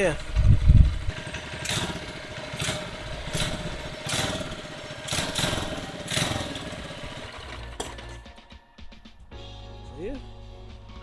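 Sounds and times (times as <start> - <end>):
small engine revving: 0.0 - 8.4.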